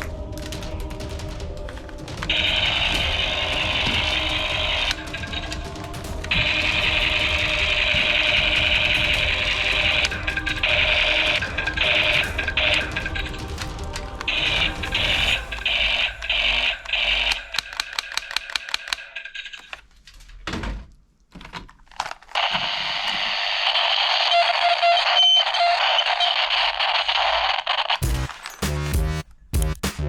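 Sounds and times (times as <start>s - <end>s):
toy gun clicking: 17.0s - 19.8s.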